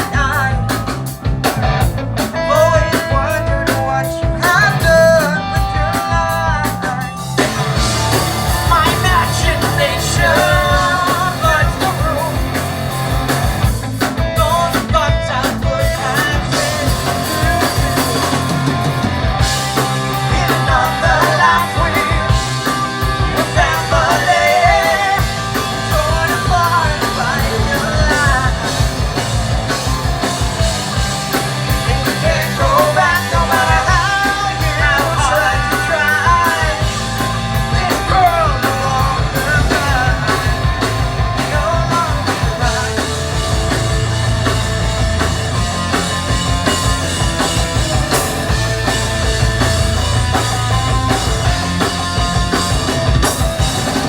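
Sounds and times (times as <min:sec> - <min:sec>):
live rock band playing: 0:00.0 - 0:54.0.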